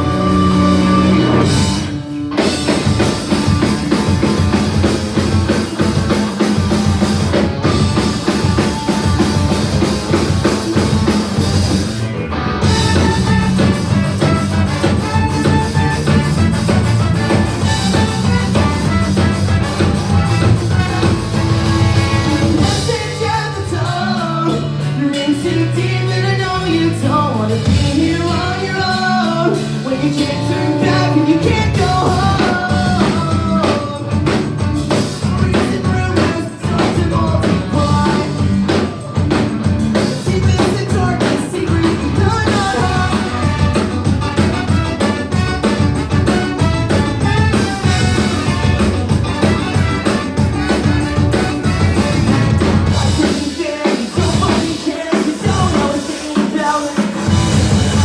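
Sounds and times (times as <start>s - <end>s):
drums: 0.0s - 58.0s
live band playing: 0.0s - 58.0s
person singing: 22.0s - 44.5s, 49.5s - 58.0s.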